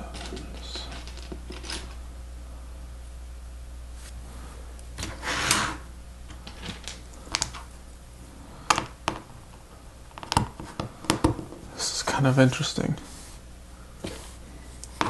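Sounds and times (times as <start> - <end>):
plastic parts rustling: 0.0 - 2.0, 6.3 - 7.7.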